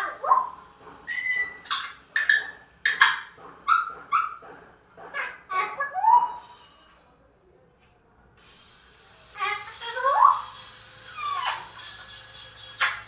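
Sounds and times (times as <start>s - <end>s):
parrot calls and squawks: 0.0s - 4.4s, 5.0s - 6.9s, 9.2s - 13.0s.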